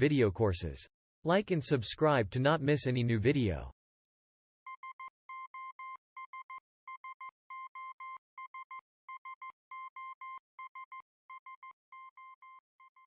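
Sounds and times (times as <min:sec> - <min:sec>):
morse code beeps: 0:04.7 - 0:13.0.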